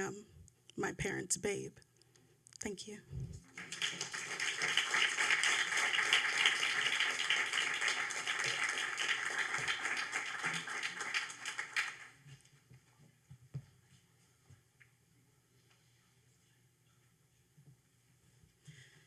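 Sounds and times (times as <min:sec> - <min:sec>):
audience applauding: 0:03.5 - 0:12.2.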